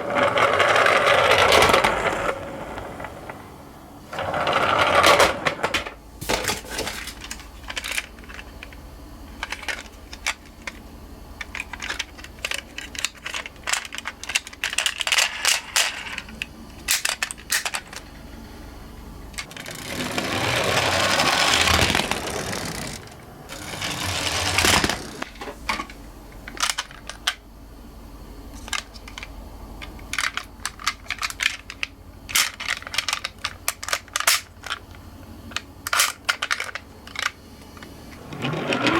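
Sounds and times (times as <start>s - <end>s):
toy cars rolling down ramp: 0.0s - 3.4s, 4.1s - 6.0s, 19.4s - 25.3s, 38.2s - 38.9s
toy cars clicking and clinking: 11.4s - 18.1s, 19.4s - 25.2s, 30.0s - 34.8s, 35.5s - 37.4s.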